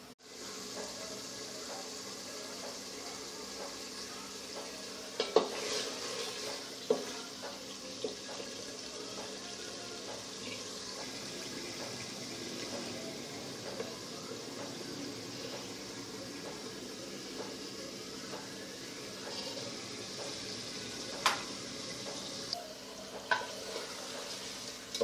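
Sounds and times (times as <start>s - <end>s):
utensil clinking against pot: 4.6s - 8.6s, 23.2s - 25.0s.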